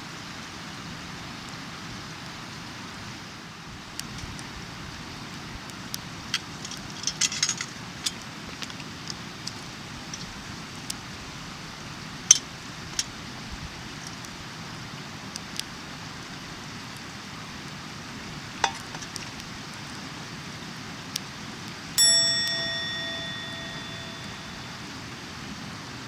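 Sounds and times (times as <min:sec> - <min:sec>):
steady hiss: 0:00.0 - 0:26.0
utensils clicking and tapping: 0:18.6 - 0:19.4, 0:22.0 - 0:25.2
metal object ringing when struck: 0:22.0 - 0:25.3.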